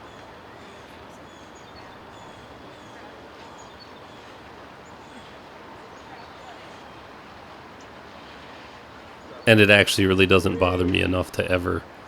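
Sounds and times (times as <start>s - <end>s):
small birds chirping: 0.0s - 7.0s
rushing outdoor background noise: 0.0s - 12.0s.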